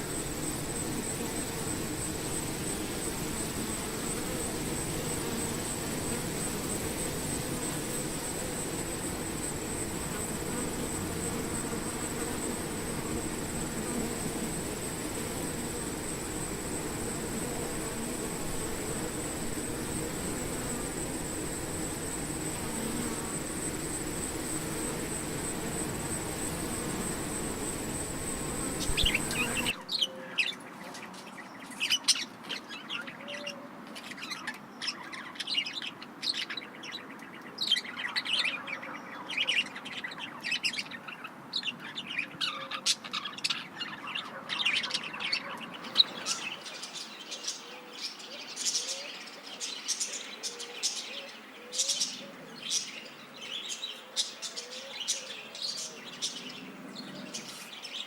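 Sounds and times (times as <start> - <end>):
steady hiss with high tone: 0.0 - 29.8
birds chirping: 0.0 - 58.0.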